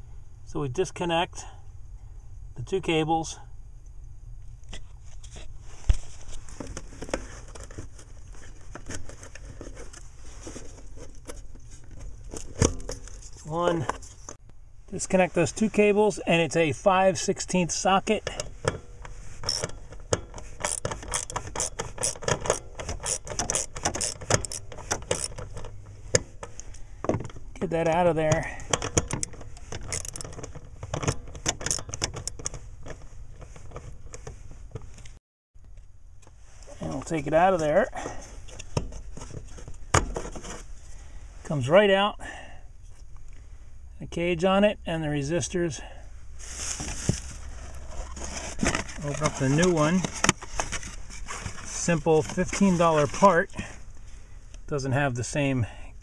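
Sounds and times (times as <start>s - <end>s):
rustling: 4.6s - 14.4s, 46.3s - 54.7s
hand tool clicks and rattles: 18.2s - 26.8s, 28.6s - 33.0s.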